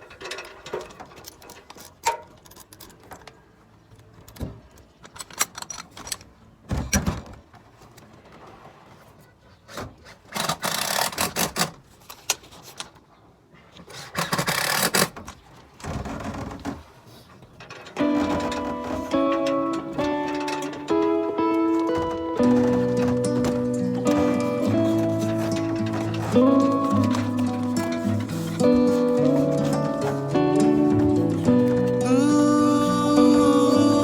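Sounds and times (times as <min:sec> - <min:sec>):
hand tool clicks and knocks: 0:17.6 - 0:32.2
rasping scraping: 0:18.0 - 0:34.0.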